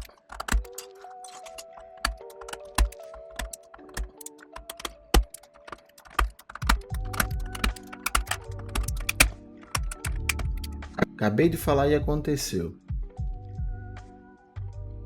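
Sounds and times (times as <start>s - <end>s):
plastic keyboard switch clicks: 0.0s - 10.8s
background music: 0.0s - 15.0s.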